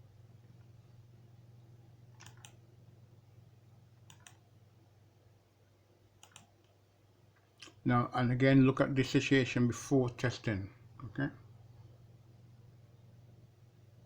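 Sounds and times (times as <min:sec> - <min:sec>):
low steady hum: 0:00.0 - 0:14.0
faint double clicks: 0:02.2 - 0:02.6, 0:04.0 - 0:04.4, 0:06.2 - 0:06.8.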